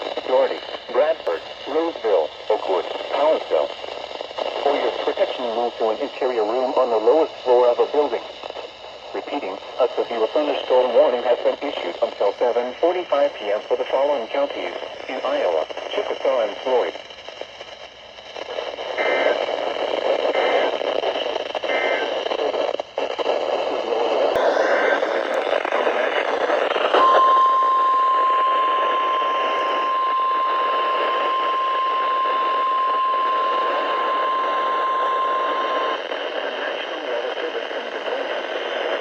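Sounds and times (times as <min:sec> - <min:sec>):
radio static hiss: 0:00.0 - 0:39.0
steady warning alarm tone: 0:26.9 - 0:37.0
alert data bursts: 0:27.0 - 0:37.0.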